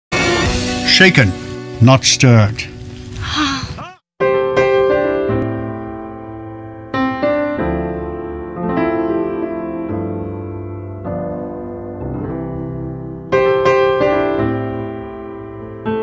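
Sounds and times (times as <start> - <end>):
slow piano chords: 4.3 - 16.0.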